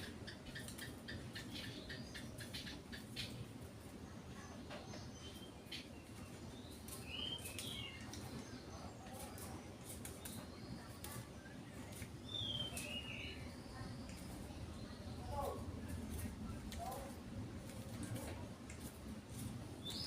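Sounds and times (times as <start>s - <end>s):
bird chirping: 0.0s - 3.6s, 4.3s - 15.6s, 19.8s - 20.0s.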